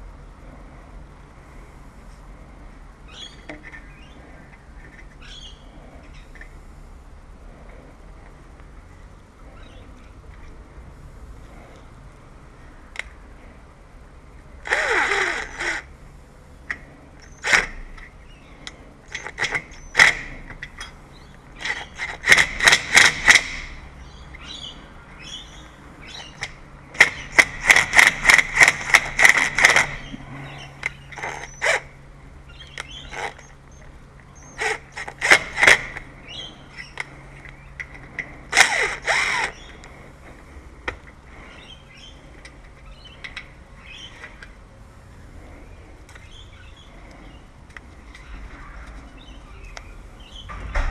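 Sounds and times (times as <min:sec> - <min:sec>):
faint steady hum: 0:00.0 - 0:50.9
scraping bursts: 0:14.6 - 0:16.0, 0:16.7 - 0:44.6.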